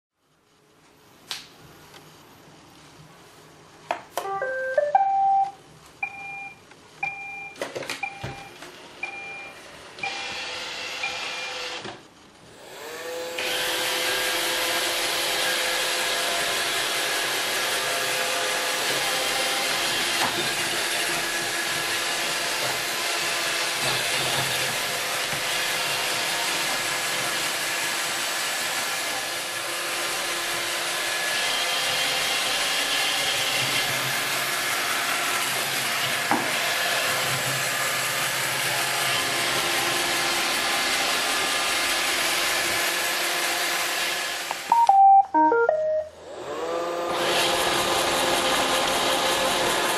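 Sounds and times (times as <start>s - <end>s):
robot vacuum whirring: 10.0s - 11.9s.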